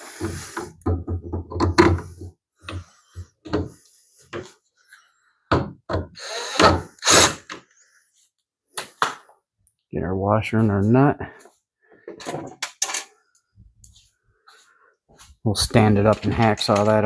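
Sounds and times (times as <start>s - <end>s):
plastic parts clunking: 0.2s - 4.5s, 12.1s - 13.1s.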